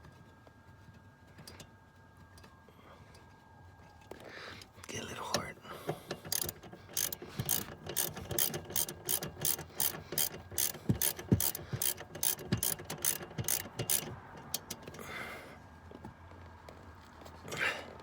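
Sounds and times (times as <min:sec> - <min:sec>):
ratchet wrench clicking: 0:06.0 - 0:15.0.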